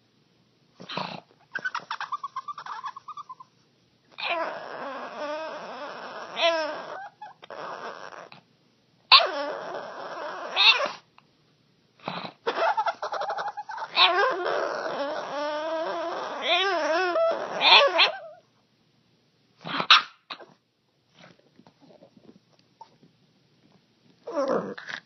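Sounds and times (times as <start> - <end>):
dog making wavering calls: 1.5 - 3.5, 4.2 - 8.3, 12.5 - 18.4.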